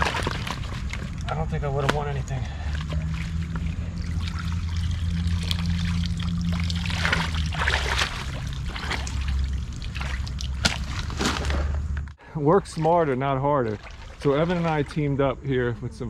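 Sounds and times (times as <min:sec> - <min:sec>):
shallow river water trickling: 0:00.0 - 0:11.5, 0:12.4 - 0:15.7
wading knocks and splashes: 0:00.0 - 0:11.8, 0:12.7 - 0:15.1
steady low hum: 0:00.0 - 0:16.0.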